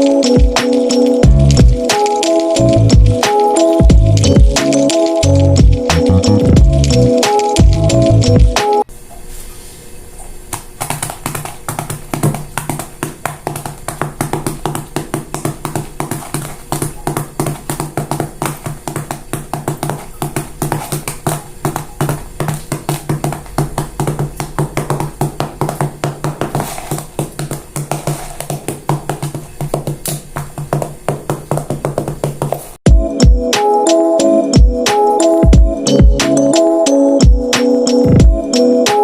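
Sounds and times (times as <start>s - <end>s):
fast sharp taps: 10.5s - 32.8s.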